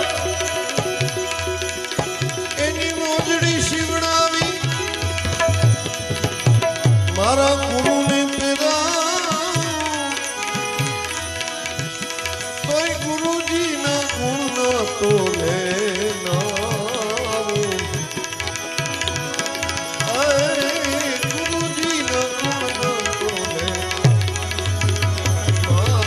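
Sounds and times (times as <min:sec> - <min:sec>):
sliding wavering melody: 0:00.0 - 0:15.8.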